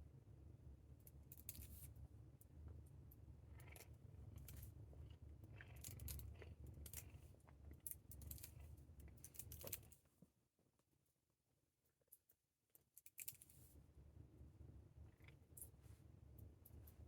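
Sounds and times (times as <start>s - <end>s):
cat purring: 3.2s - 9.6s, 14.7s - 17.0s.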